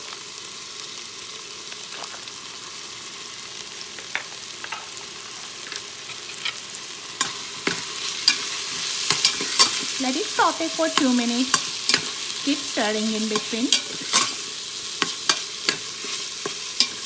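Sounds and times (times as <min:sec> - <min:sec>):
sauce sizzling in a pot: 0:00.0 - 0:17.0
spoon clicking against pot: 0:11.0 - 0:12.2, 0:15.0 - 0:17.0.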